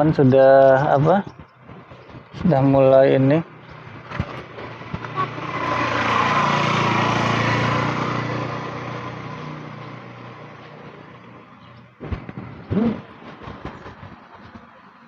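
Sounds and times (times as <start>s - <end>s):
motor vehicle passing: 0.8s - 15.0s.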